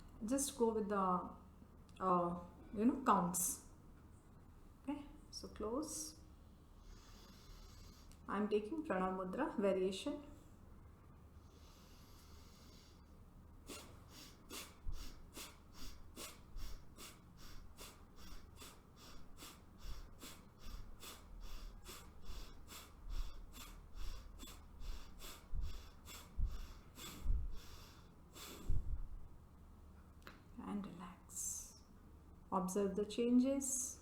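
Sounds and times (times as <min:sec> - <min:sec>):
rapid forceful nostril breathing: 0:06.8 - 0:08.3, 0:11.4 - 0:29.3.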